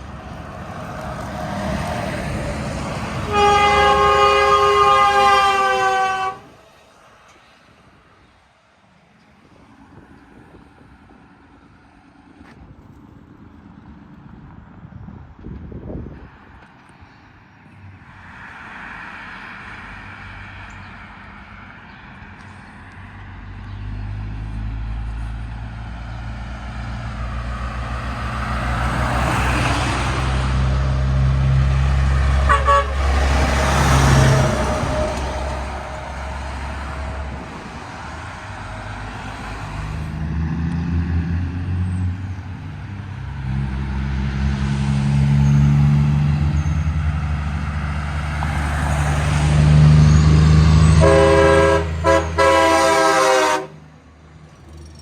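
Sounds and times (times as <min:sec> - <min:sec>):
locomotive engine rumble: 0:00.0 - 0:08.1, 0:20.7 - 0:55.0
train horn chord: 0:03.2 - 0:06.6, 0:32.3 - 0:36.4, 0:50.9 - 0:53.8
train wheel noise: 0:27.4 - 0:39.9.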